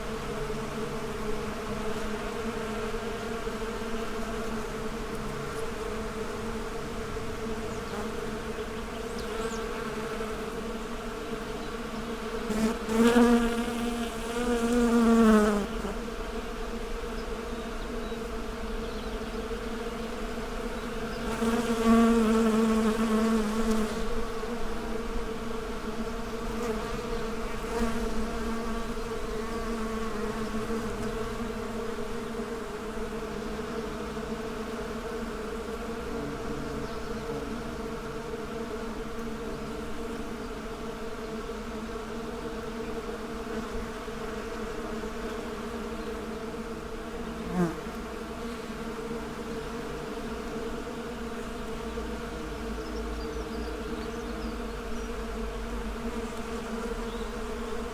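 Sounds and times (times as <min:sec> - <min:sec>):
bees buzzing: 0:00.0 - 0:57.9
single bee passing close: 0:00.0 - 0:57.9.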